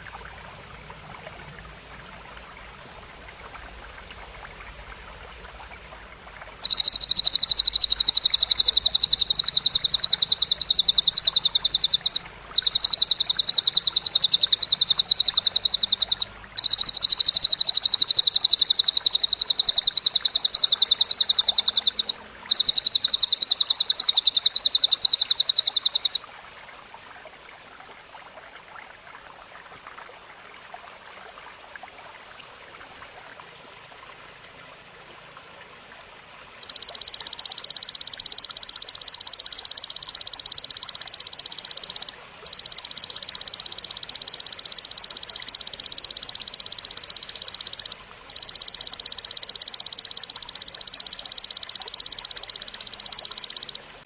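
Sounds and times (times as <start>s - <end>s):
faint hiss: 0.0s - 28.8s
bird high trill: 6.6s - 26.2s, 36.6s - 53.8s
grasshopper buzzing trill: 6.6s - 26.2s.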